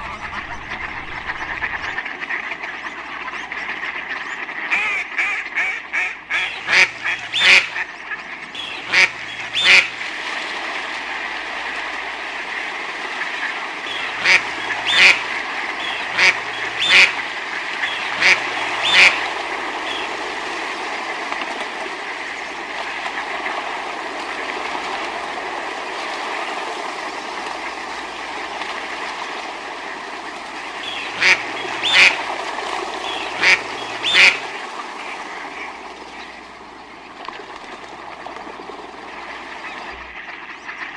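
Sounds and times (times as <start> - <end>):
ducks quacking: 0.0 - 10.0, 13.0 - 20.2, 30.7 - 37.1.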